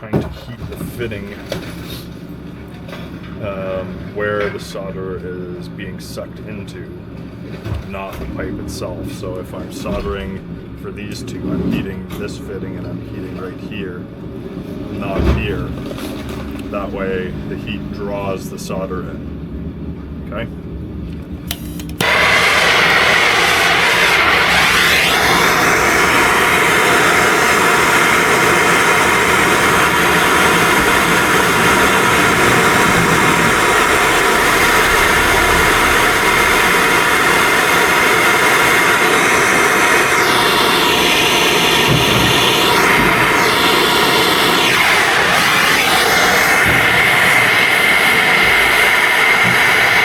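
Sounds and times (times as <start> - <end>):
gas torch roaring hiss: 14.4 - 19.0, 21.4 - 50.0.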